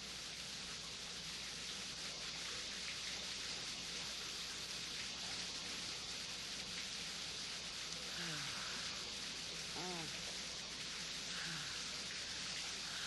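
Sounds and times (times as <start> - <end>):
steady hiss: 0.0 - 13.0.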